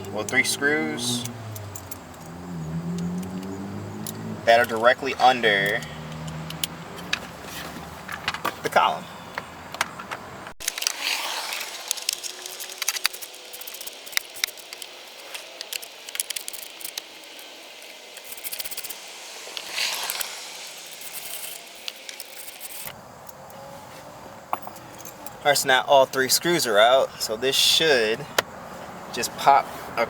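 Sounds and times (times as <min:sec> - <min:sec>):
ratchet wrench clicking: 0:00.0 - 0:07.2, 0:10.6 - 0:23.5
small metallic rattles: 0:00.0 - 0:23.6, 0:24.5 - 0:25.6.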